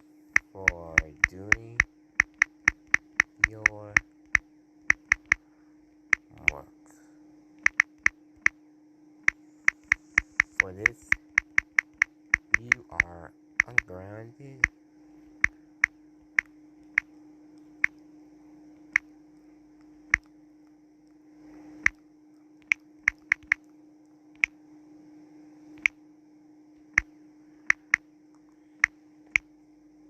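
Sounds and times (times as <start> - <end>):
faint steady hum: 0.0 - 30.0
touchscreen keyboard typing clicks: 0.4 - 5.4, 6.1 - 6.6, 7.6 - 8.6, 9.6 - 14.0, 22.6 - 23.6, 27.7 - 28.0.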